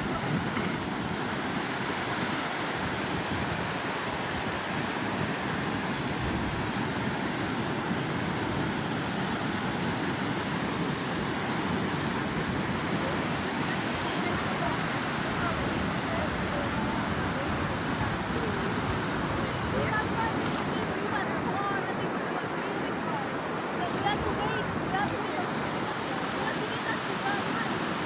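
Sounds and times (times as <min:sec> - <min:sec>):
steady rushing outdoor background noise: 0:00.0 - 0:28.0.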